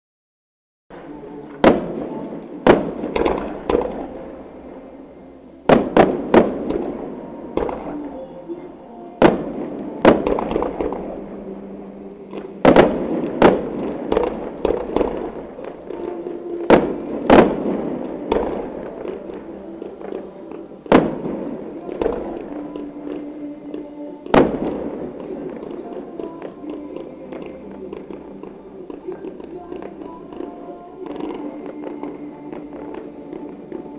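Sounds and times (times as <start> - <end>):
firework shells bursting: 1.6 - 4.3, 12.1 - 23.3.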